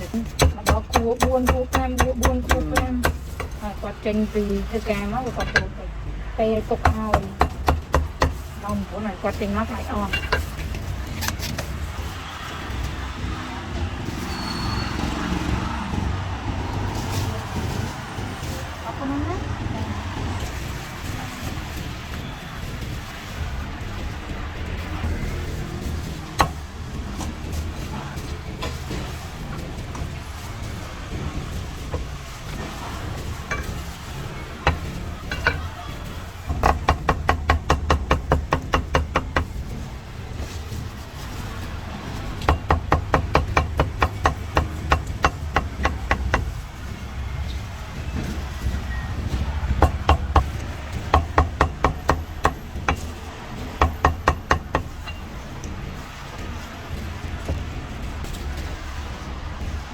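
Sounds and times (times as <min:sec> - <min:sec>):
low street rumble: 0:00.0 - 0:59.9
cleaver chopping meat: 0:00.2 - 0:03.6, 0:06.8 - 0:08.5, 0:36.5 - 0:39.8, 0:42.0 - 0:47.0, 0:48.4 - 0:55.0.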